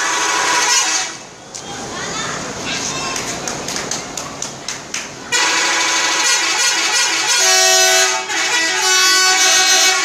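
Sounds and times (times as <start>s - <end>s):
bus horn playing a tune: 0.0s - 1.2s, 5.3s - 10.0s.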